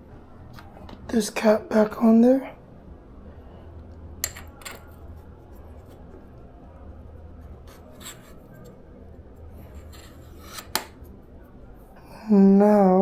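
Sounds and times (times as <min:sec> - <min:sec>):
steady low hum: 0:00.0 - 0:13.0
light metal scraping: 0:07.4 - 0:08.8, 0:09.5 - 0:11.0.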